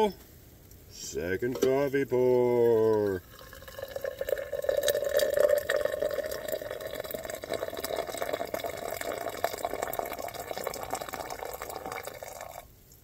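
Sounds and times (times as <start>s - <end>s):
coffee pouring into a cup: 2.7s - 12.7s.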